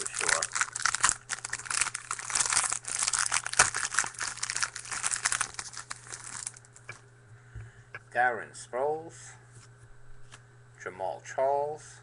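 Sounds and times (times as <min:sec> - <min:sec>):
wrapper tearing and crinkling: 0:00.0 - 0:06.9.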